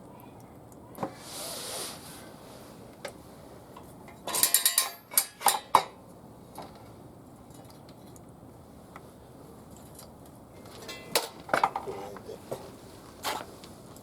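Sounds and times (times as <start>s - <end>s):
brief hiss: 1.0s - 2.7s
metal clinks and rattles: 4.1s - 5.9s, 9.7s - 11.9s.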